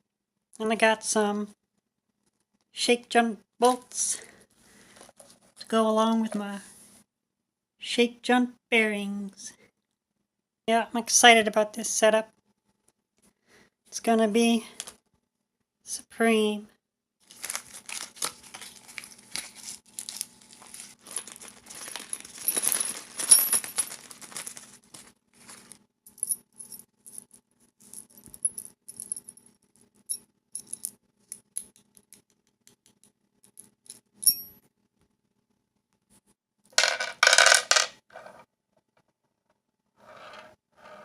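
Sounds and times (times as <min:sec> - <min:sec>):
small metal hardware clinking: 0:30.1 - 0:31.9, 0:33.6 - 0:34.6.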